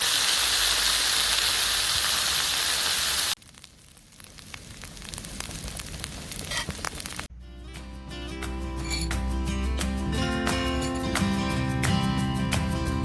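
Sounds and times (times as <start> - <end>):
fire crackling: 0.0 - 7.3
fire hissing: 0.0 - 7.3.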